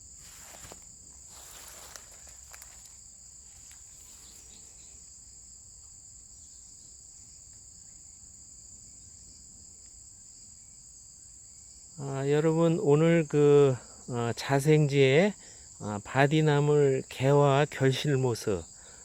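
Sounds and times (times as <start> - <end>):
faint rustles and clicks: 0.0 - 5.0
insects trilling: 0.0 - 19.0.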